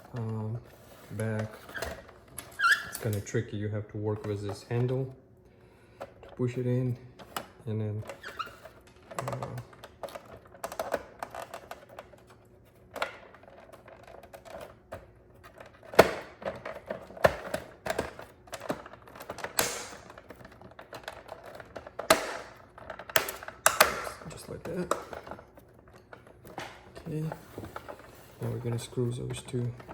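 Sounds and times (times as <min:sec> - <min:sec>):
coffee maker plastic clicks and knocks: 0:15.9 - 0:25.4.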